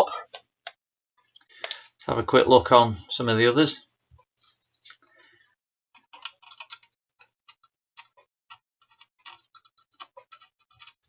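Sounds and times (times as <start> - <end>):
small objects clicking and tapping: 6.0 - 11.0.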